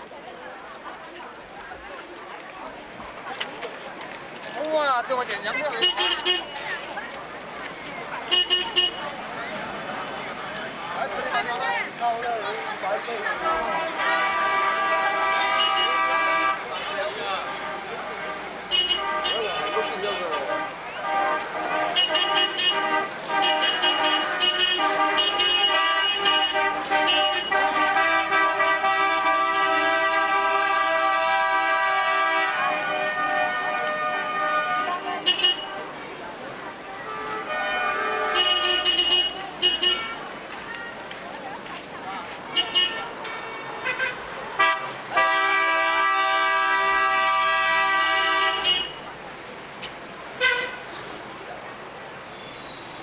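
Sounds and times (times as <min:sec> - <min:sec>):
city street noise: 0:00.0 - 0:53.0
vehicle horns tooting: 0:05.6 - 0:06.9, 0:08.3 - 0:09.2, 0:13.4 - 0:36.0, 0:36.9 - 0:40.3, 0:42.5 - 0:49.1, 0:50.4 - 0:50.9.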